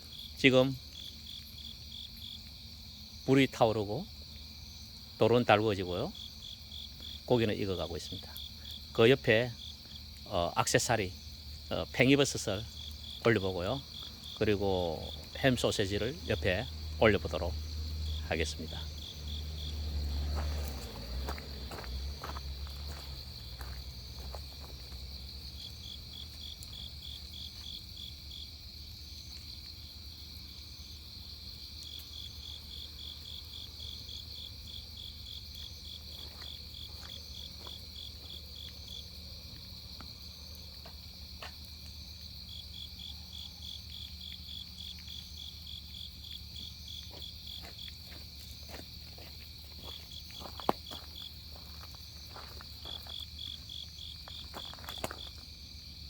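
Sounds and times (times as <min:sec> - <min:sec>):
crickets trilling: 0:00.0 - 0:56.0
insect chirping in runs: 0:00.0 - 0:56.0.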